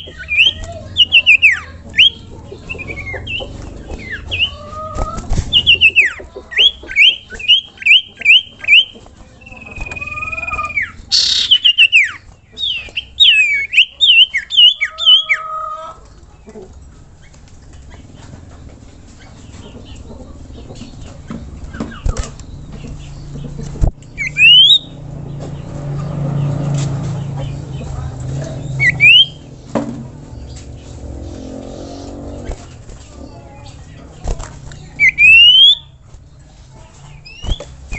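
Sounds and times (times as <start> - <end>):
bird whistling rising notes: 5.5 - 15.4, 24.2 - 25.0, 28.7 - 29.5, 35.0 - 35.9.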